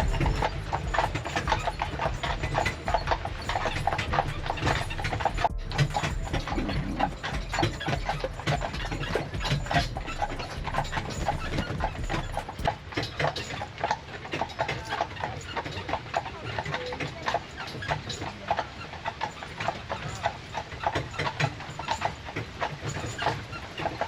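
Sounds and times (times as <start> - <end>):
low rumble: 0.0 - 12.7
horse hooves clip-clopping: 0.0 - 24.0.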